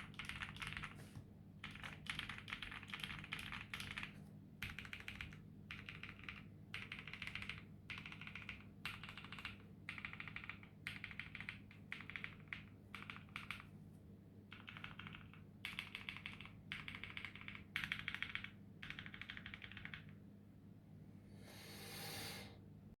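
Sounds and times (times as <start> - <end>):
mechanical keyboard typing: 0.0 - 13.7, 14.5 - 20.2
hiss: 21.4 - 22.5.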